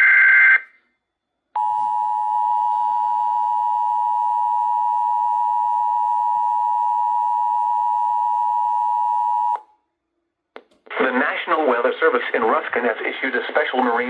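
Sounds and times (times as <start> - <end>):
two-tone alert signal: 1.6 - 7.8.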